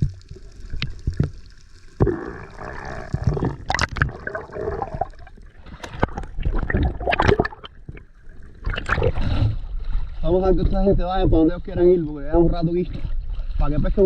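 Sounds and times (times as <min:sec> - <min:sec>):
water splashing and gurgling: 0:00.0 - 0:10.3.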